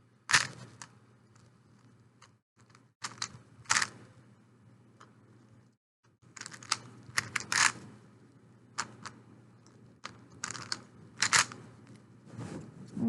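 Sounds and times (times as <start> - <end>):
puzzle cube clicking: 6.4 - 7.8, 10.0 - 11.6.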